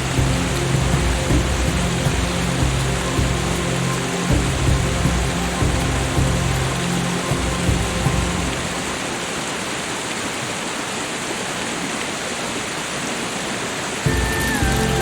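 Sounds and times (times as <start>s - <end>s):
soft music with low notes: 0.0s - 9.4s, 14.1s - 15.0s
rush of falling water: 0.0s - 15.0s.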